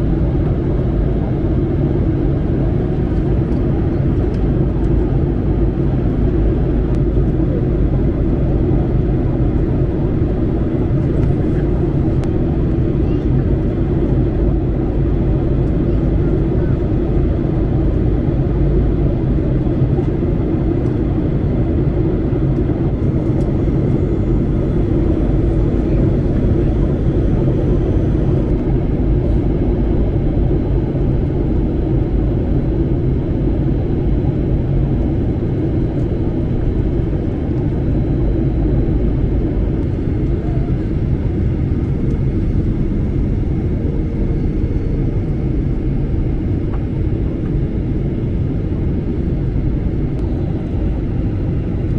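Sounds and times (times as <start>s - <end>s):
jet engines and rushing air: 0.0s - 31.2s, 33.0s - 51.9s
faint steady whine: 5.7s - 29.7s, 34.8s - 51.9s.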